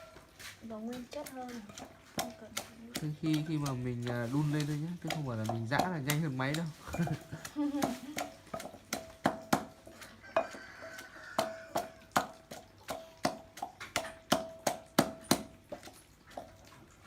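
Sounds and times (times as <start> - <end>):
pestle pounding in a mortar: 0.0 - 16.6.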